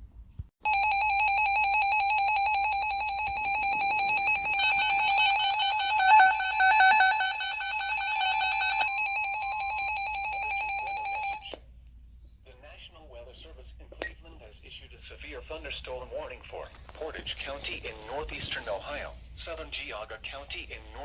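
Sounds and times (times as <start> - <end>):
higher pulsing alarm: 0.7 - 11.5
rapidly pulsing alarm beep: 1.9 - 11.4.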